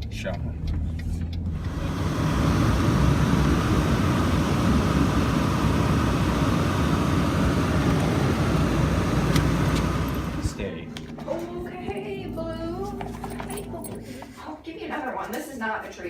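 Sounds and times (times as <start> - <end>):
road and wind noise: 0.0 - 11.2
low engine hum: 0.0 - 14.4.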